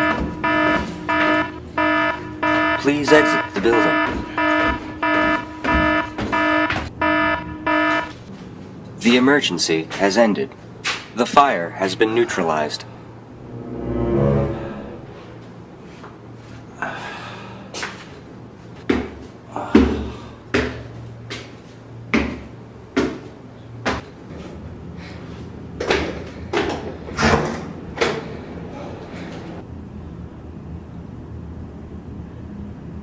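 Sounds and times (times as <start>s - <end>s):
low steady hum: 13.3s - 15.6s.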